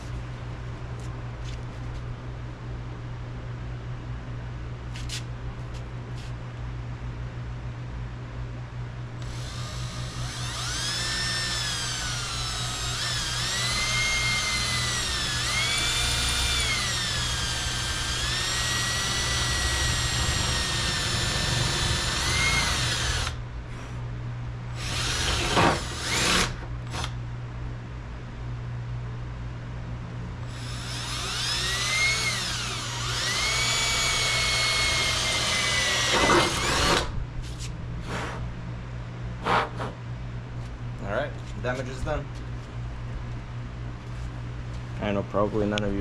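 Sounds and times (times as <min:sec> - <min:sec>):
power drill whining: 0:09.2 - 0:23.4, 0:24.8 - 0:27.1, 0:30.5 - 0:37.1.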